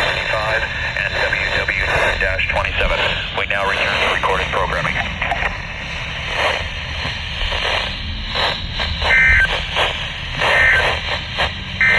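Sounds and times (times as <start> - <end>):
radio hiss and static: 0.0 - 11.9
warbling data bursts: 0.0 - 11.9.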